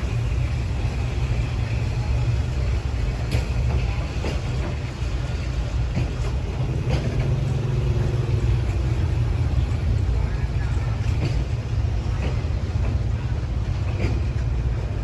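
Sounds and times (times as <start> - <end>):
locomotive engine rumbling: 0.0 - 15.0.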